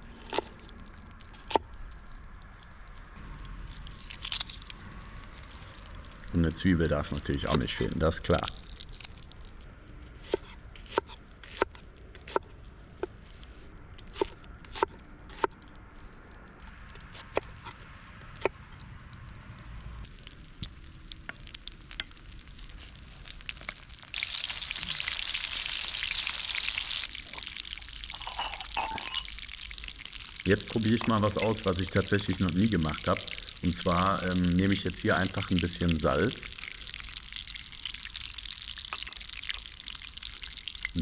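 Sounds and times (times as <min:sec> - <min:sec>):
vegetables sizzling in hot pan: 0:20.1 - 0:31.6, 0:36.5 - 0:41.0.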